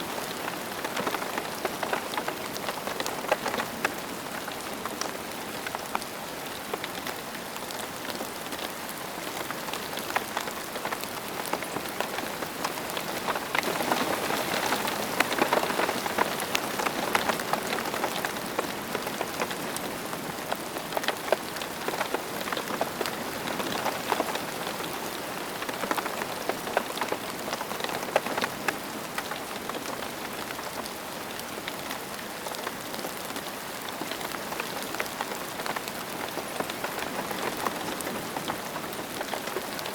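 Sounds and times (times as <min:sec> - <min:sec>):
rain on a hard surface: 0:00.0 - 0:39.9.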